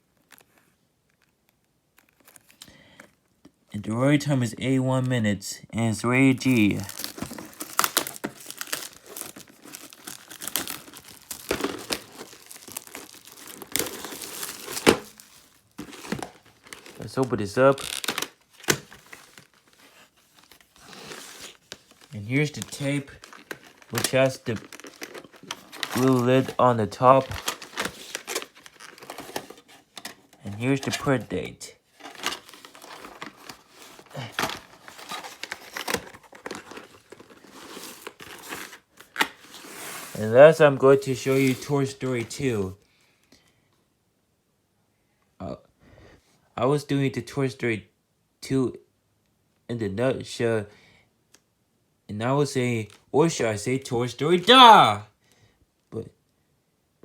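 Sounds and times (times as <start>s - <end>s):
tape case crinkling and clicking: 0.1s - 3.6s, 6.4s - 39.6s.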